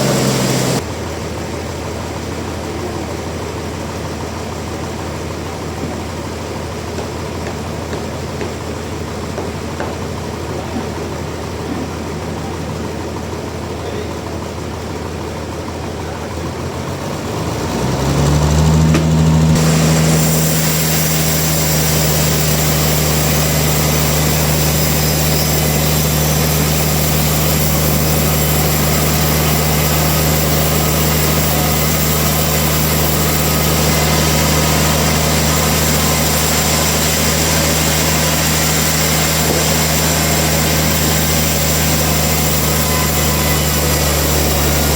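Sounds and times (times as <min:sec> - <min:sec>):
motor spinning up: 0:00.0 - 0:00.8, 0:16.8 - 0:44.9
machinery low hum: 0:00.0 - 0:14.8, 0:17.2 - 0:44.9.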